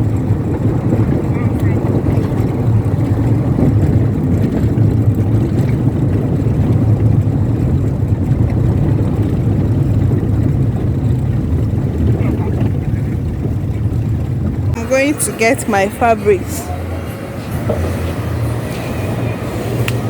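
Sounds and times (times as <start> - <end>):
road noise: 0.0 - 20.0
vehicle engine rumble: 0.0 - 20.0.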